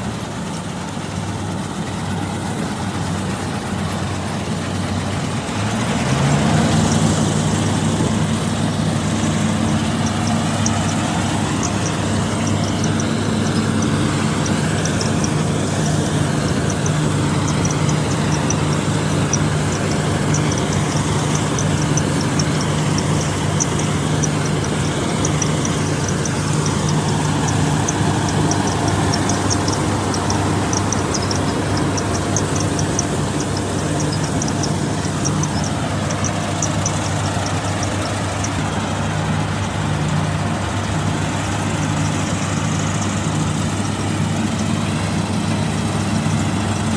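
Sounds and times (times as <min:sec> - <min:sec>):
combine harvester diesel engine: 0:00.0 - 0:46.9
fast light ticking: 0:06.7 - 0:38.6.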